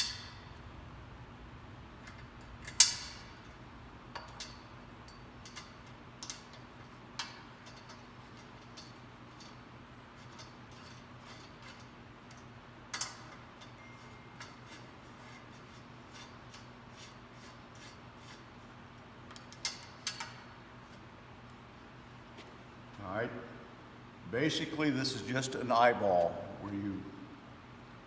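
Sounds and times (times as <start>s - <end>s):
steady low hum: 0.0s - 28.0s
metal parts clicking and tapping: 10.2s - 14.6s.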